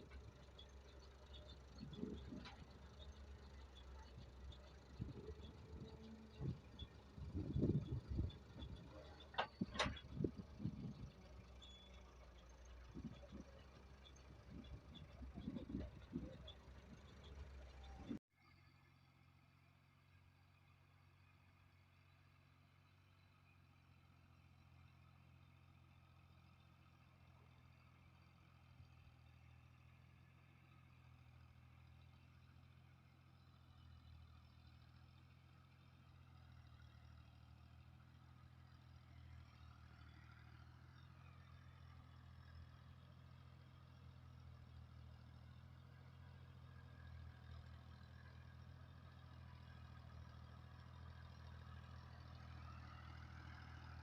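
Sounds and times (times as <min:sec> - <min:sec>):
diesel engine running: 0:00.0 - 0:18.2, 0:31.1 - 0:54.0.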